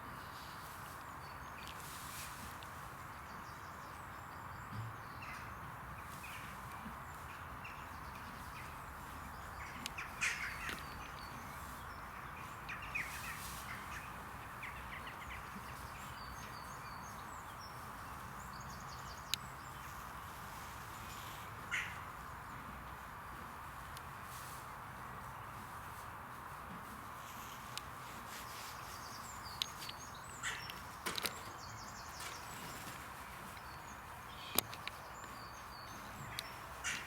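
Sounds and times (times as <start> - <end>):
small birds twittering: 0.1 - 26.1, 27.0 - 37.0
crows cawing: 21.7 - 22.0, 30.4 - 30.8.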